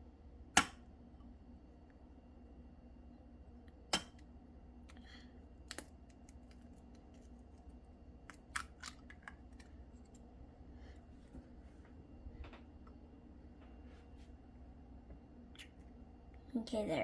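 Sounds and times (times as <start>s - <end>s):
egg cracking against a bowl: 3.8s - 5.0s, 5.6s - 10.3s.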